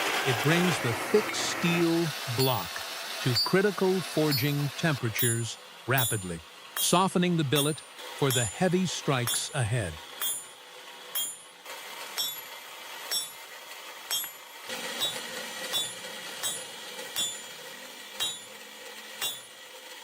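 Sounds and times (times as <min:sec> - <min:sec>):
hammer striking steel on anvil: 0:03.3 - 0:03.6, 0:04.3 - 0:13.5, 0:14.1 - 0:17.6, 0:18.2 - 0:18.6, 0:19.2 - 0:19.6.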